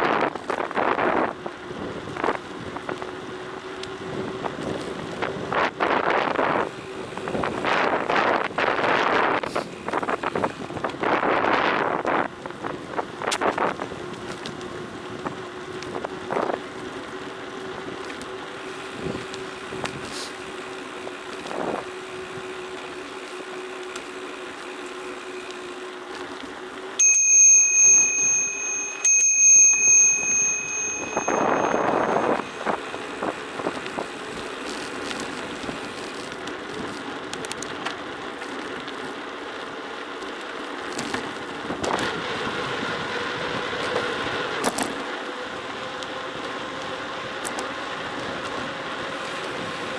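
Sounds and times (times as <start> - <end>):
bicycle rolling and rattling: 0.0 - 49.9
bicycle bell ringing: 27.0 - 35.2.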